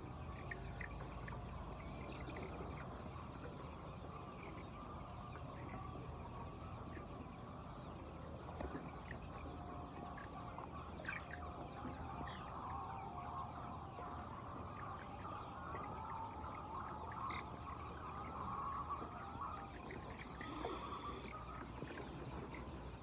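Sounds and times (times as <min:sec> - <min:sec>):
hens clucking: 0:00.0 - 0:23.0
short clear hen calls: 0:20.1 - 0:21.7.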